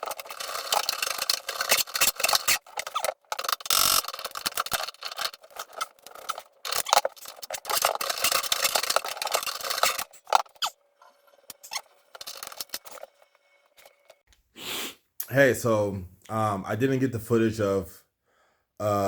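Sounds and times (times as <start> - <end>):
hard objects clattering and scraping: 0.0 - 14.2.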